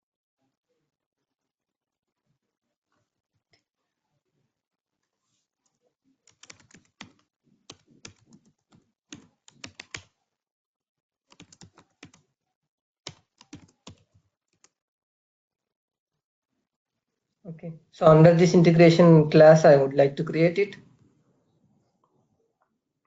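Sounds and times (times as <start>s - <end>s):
computer keyboard typing: 6.3s - 10.1s, 11.3s - 12.2s, 13.1s - 14.7s.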